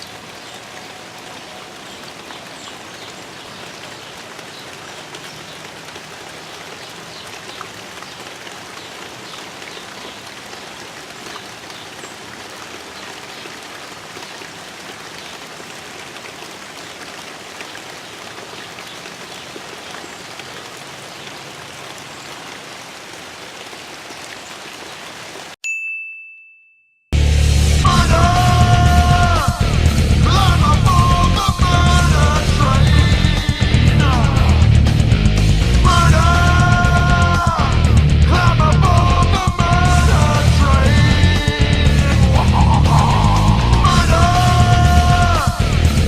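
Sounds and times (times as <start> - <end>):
steady rain falling: 0.0 - 25.6, 27.2 - 46.0
high ding: 25.6 - 27.1.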